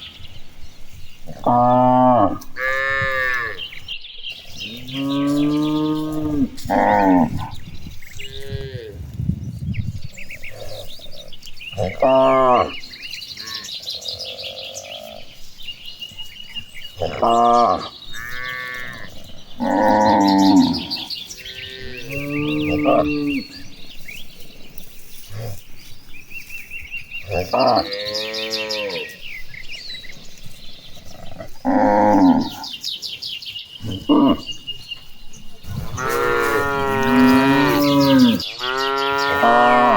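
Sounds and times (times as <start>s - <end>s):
birds chirping: 0.0s - 39.9s
cattle mooing: 11.8s - 12.8s, 17.0s - 23.6s, 36.0s - 39.9s.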